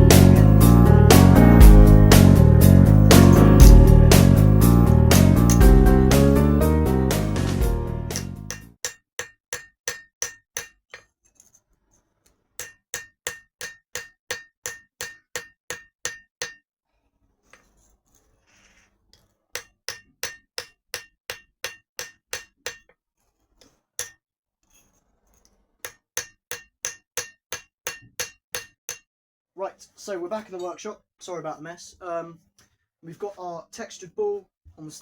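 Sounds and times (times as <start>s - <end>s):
hammer striking steel on anvil: 3.1s - 4.2s, 5.5s - 5.7s, 8.1s - 11.1s, 12.6s - 16.6s, 19.6s - 22.9s, 24.0s - 24.2s, 25.8s - 29.1s.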